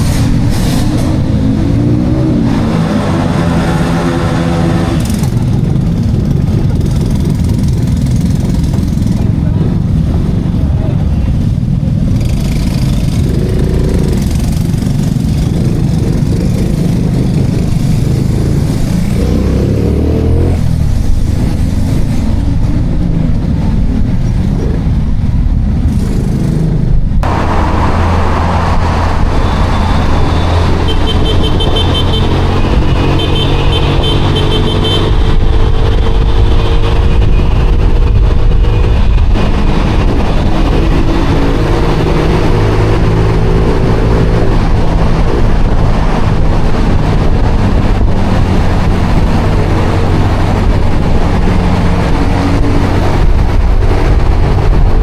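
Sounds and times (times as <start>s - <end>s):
road and wind noise: 0.0s - 55.0s
motorcycle engine running: 5.0s - 10.2s.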